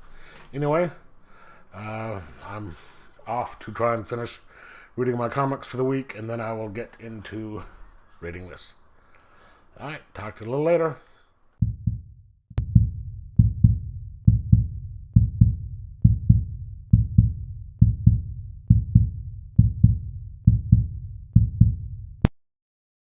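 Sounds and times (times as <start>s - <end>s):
heartbeat thumps: 11.6s - 22.3s.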